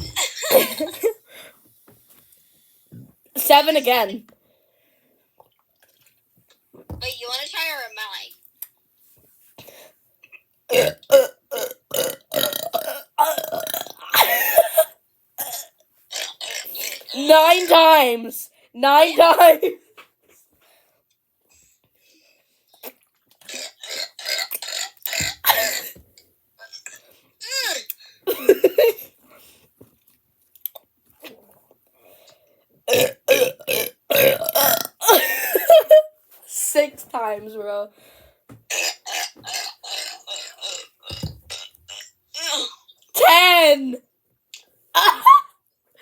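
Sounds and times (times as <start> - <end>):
faint clicks and mouth sounds: 5.4 - 6.9, 8.3 - 8.9, 29.9 - 32.6, 38.7 - 43.1, 44.5 - 44.8
person belching: 10.7 - 14.2, 15.4 - 17.2, 23.4 - 26.0, 32.9 - 35.2, 38.7 - 42.8.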